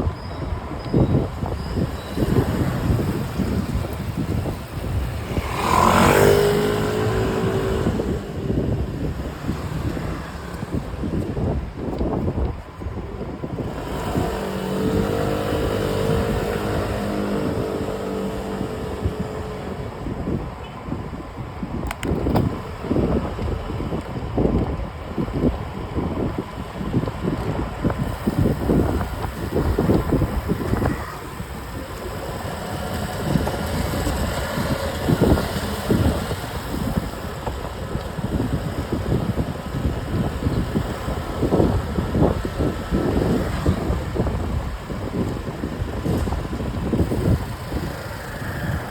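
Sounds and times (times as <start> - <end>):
bicycle humming whine: 0.0 - 48.9
wind on microphone: 0.0 - 48.9.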